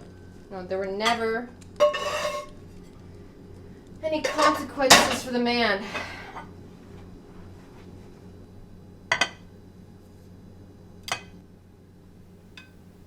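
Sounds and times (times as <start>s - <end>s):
low steady hum: 0.0s - 13.0s
tableware clinking: 1.1s - 2.6s, 4.2s - 5.3s.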